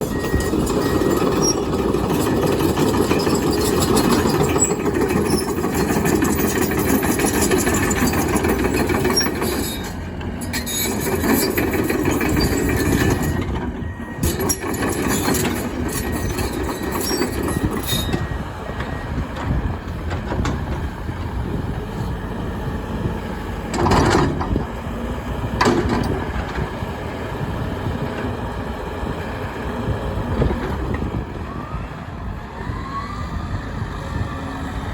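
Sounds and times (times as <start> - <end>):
excavator engine and hydraulics: 0.0 - 34.9.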